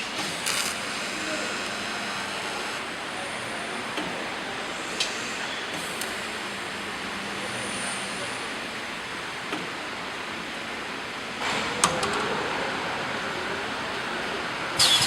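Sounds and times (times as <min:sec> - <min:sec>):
spot welding machine running: 0:00.0 - 0:02.9, 0:14.8 - 0:15.0
loud hiss: 0:14.8 - 0:15.0.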